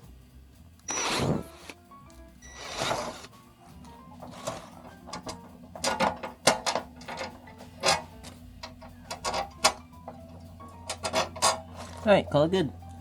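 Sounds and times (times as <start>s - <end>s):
low steady hum: 0.0s - 13.0s
tools clicking and clacking: 2.5s - 12.2s.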